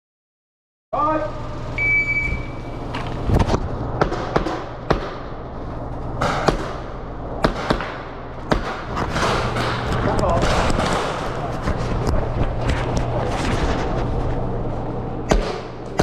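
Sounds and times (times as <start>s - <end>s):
shot timer beep: 1.8s - 2.8s
airsoft pistol shots: 4.0s - 5.3s, 6.2s - 6.8s, 7.4s - 9.8s, 15.3s - 16.0s.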